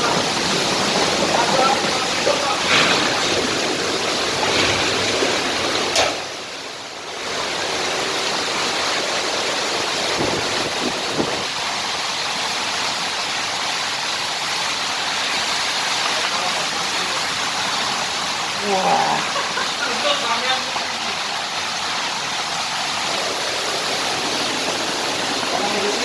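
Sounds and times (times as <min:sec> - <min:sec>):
strong wind roaring: 0:09.9 - 0:11.7.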